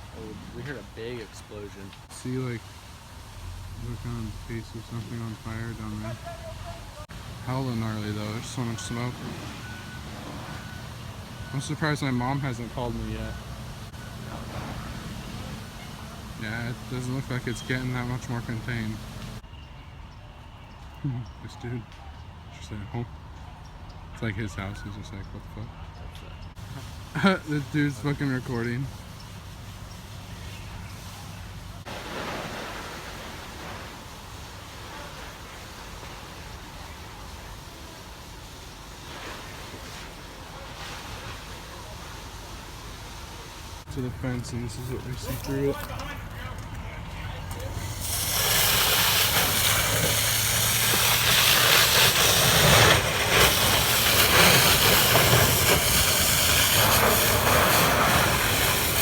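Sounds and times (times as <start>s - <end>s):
fire hoses spraying water: 0.0s - 19.4s, 26.5s - 59.0s
engine humming: 0.0s - 19.6s, 41.2s - 59.0s
ocean surf: 31.8s - 38.2s.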